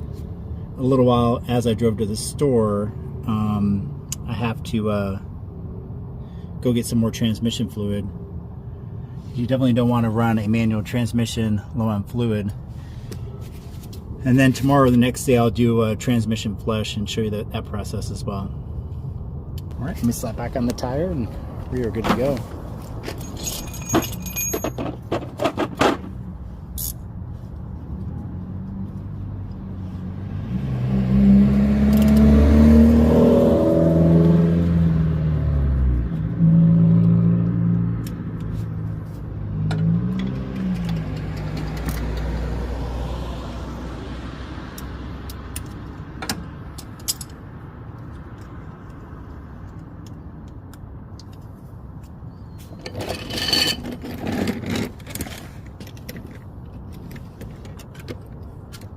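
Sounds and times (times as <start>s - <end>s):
vehicle engine revving: 29.7s - 38.2s.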